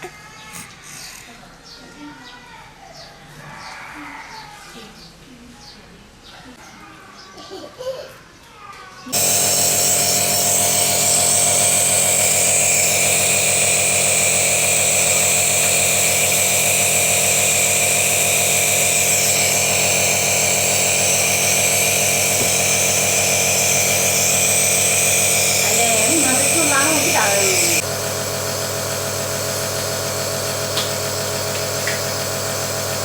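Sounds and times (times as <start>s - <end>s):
electric motor buzzing hum: 9.1s - 33.0s.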